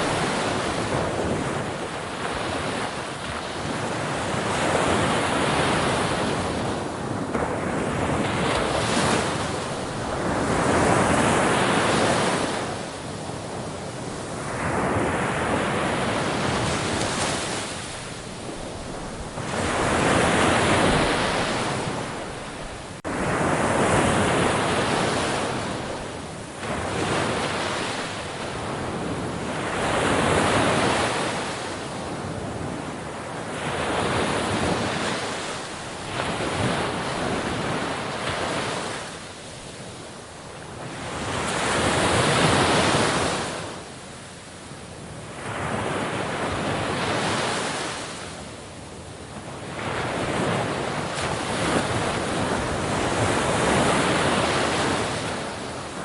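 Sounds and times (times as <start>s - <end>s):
sea waves breaking: 0.0s - 32.7s, 49.7s - 56.0s.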